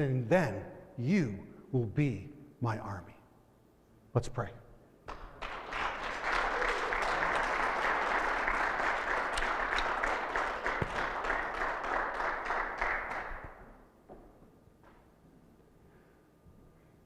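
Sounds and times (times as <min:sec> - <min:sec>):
crowd applauding: 0:05.1 - 0:13.8.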